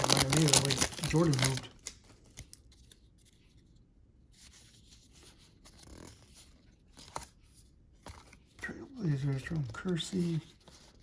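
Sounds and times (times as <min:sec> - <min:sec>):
trading cards clicking and rustling: 0:00.0 - 0:02.6.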